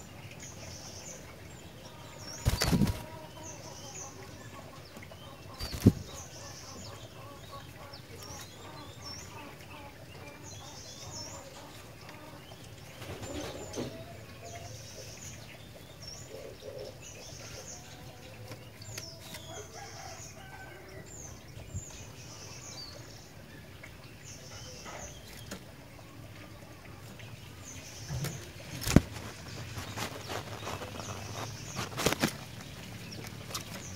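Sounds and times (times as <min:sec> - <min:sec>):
bird chirping: 0:21.2 - 0:33.9.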